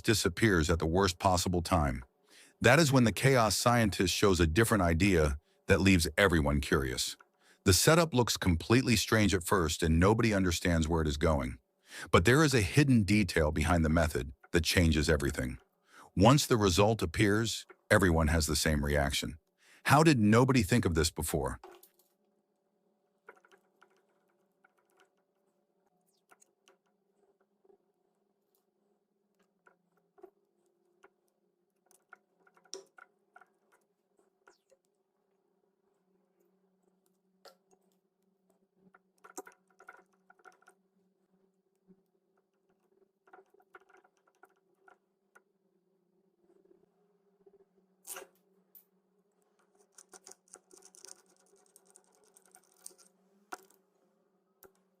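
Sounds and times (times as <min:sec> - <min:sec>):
low steady hum: 0:07.7 - 0:19.3.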